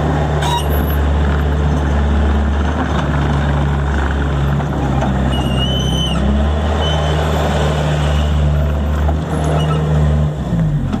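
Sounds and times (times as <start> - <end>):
diesel engine running: 0.0 - 11.0
high squeal: 0.4 - 0.9, 5.3 - 7.4, 9.4 - 9.9.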